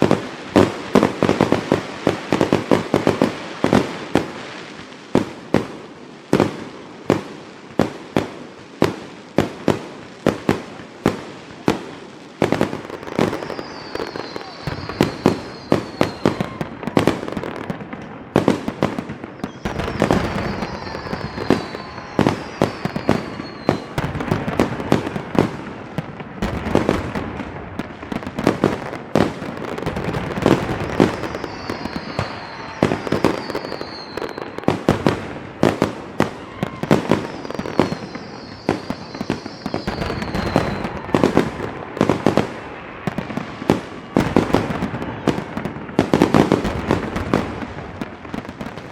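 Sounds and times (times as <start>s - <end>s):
fireworks bangs: 0.0s - 48.9s
fireworks crackle: 0.0s - 48.9s
high falling whistles: 13.2s - 16.7s, 19.4s - 24.0s, 30.7s - 34.8s, 37.2s - 41.3s.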